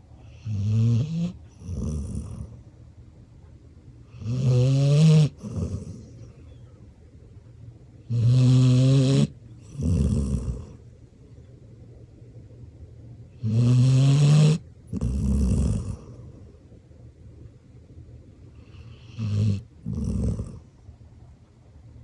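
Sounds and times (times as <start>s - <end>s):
dog snoring: 0.2s - 2.6s, 4.1s - 6.4s, 8.0s - 10.8s, 13.4s - 16.5s, 18.6s - 20.7s.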